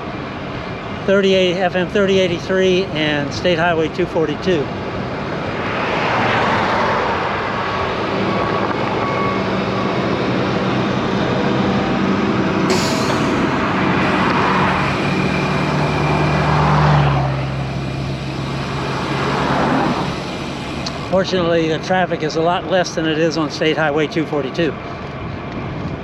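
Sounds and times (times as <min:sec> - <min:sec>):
road traffic passing: 0:00.0 - 0:26.0
truck passing: 0:00.0 - 0:26.0
wind rush on microphone: 0:04.7 - 0:17.2, 0:24.8 - 0:26.0.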